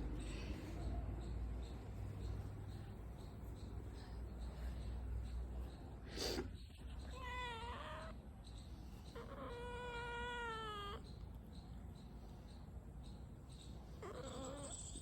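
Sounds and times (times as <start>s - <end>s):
cat meowing: 7.0s - 8.2s, 9.2s - 11.0s, 14.0s - 15.0s.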